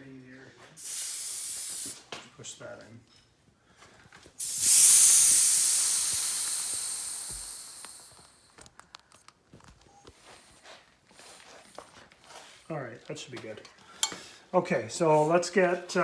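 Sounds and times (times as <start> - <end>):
air hissing out of tire valve: 0.8 - 2.2, 4.4 - 8.6.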